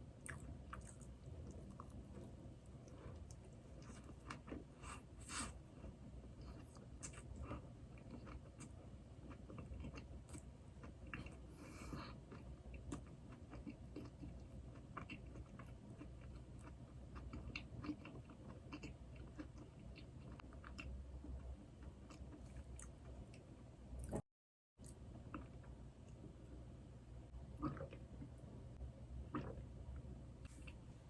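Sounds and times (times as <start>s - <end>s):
chewing doughnuts: 0.2s - 24.2s.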